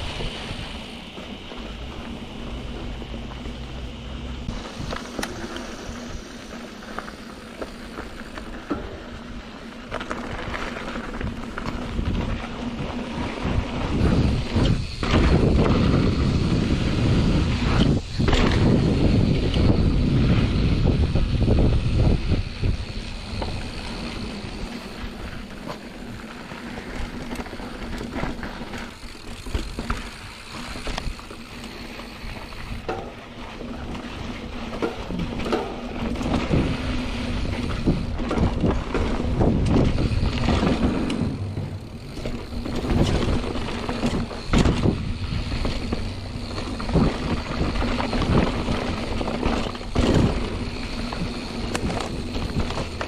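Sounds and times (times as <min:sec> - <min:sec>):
bike rattling and knocking: 0:00.0 - 0:53.0
bike tyres on dirt: 0:00.0 - 0:53.0
wind buffeting microphone: 0:10.3 - 0:31.3, 0:32.1 - 0:53.0.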